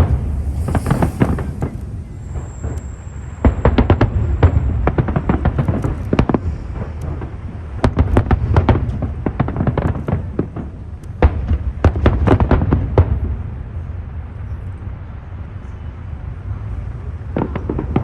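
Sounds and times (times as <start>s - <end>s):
low rumble: 0.0s - 5.0s
fireworks shells bursting: 0.0s - 7.0s.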